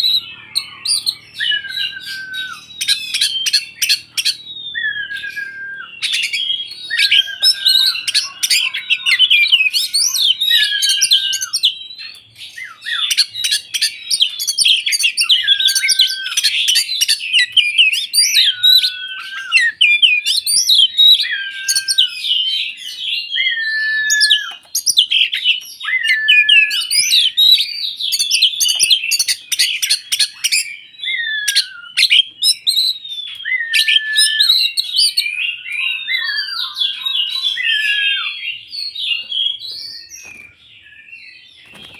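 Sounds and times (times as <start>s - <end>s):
bird singing: 0.0s - 41.9s.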